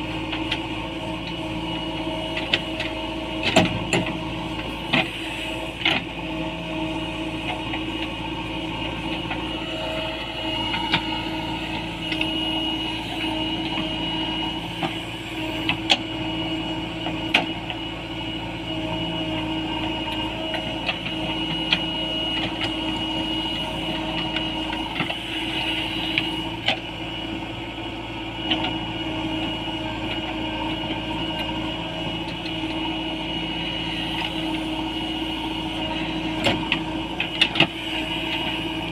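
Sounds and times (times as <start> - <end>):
diesel engine under load: 0.0 - 38.9
high whine: 6.8 - 31.0.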